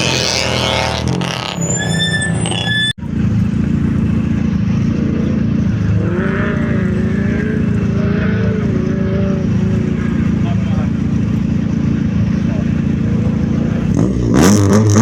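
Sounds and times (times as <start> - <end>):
car engine idling: 3.0 - 15.0
rally car engine running loudly: 3.0 - 15.0.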